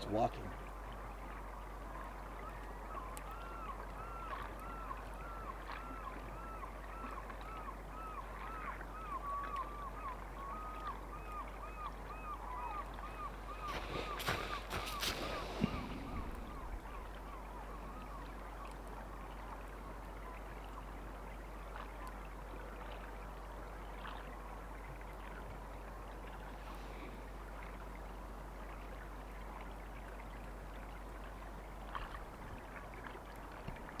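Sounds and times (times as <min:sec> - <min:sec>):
running water: 0:12.4 - 0:20.0.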